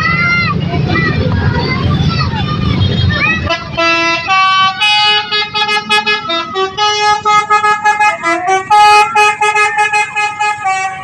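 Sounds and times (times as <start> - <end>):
musical bus horn melody: 3.4 - 11.0.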